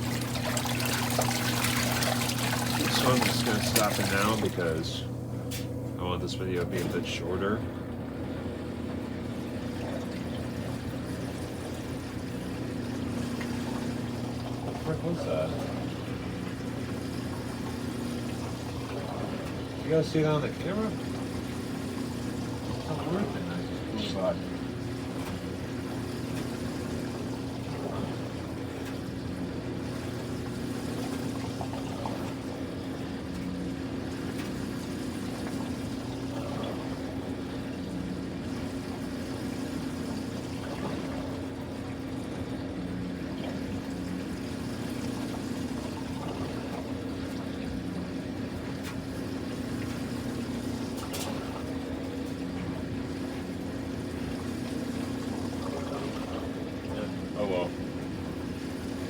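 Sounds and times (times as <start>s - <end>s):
water trickling: 0.0s - 5.2s, 7.7s - 59.0s
laundry machine humming: 0.0s - 59.0s.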